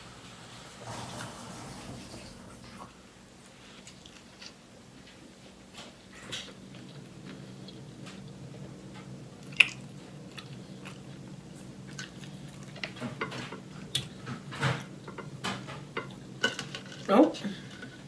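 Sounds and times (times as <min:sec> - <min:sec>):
low steady hum: 0:00.0 - 0:18.0
person chewing: 0:09.4 - 0:12.9.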